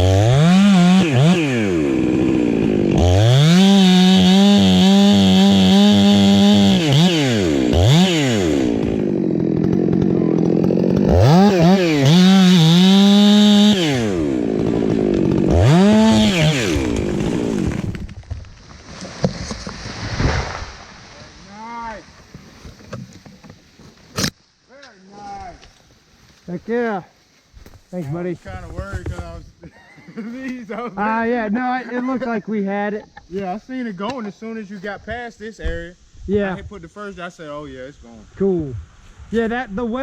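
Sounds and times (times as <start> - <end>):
chainsaw revving: 0.0 - 18.1.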